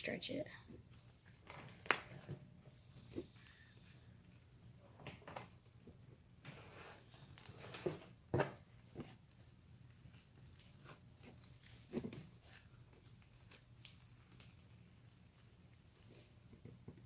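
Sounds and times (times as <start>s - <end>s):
slime being stretched by hand: 8.7s - 17.0s.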